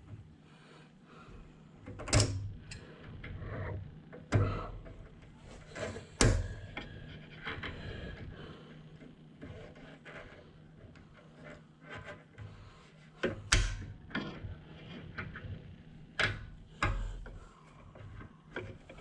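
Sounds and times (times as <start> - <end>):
tools rubbing and clattering: 4.9 - 15.9.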